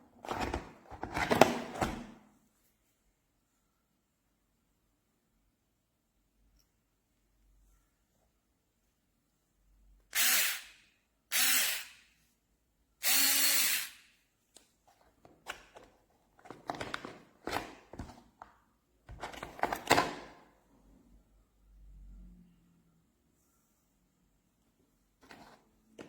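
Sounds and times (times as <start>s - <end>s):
electric screwdriver motor bursts: 10.1s - 12.0s, 13.0s - 14.0s.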